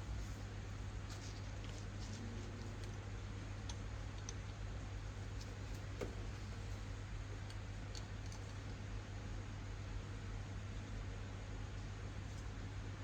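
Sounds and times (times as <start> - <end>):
steady low hum: 0.0 - 13.0
faint clicks and taps of parts: 3.6 - 4.6.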